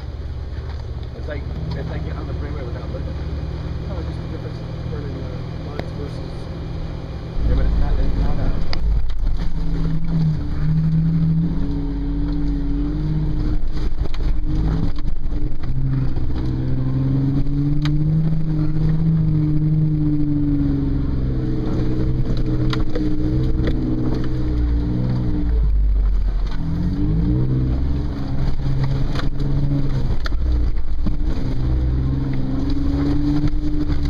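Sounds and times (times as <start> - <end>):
car engine running: 0.0 - 34.0.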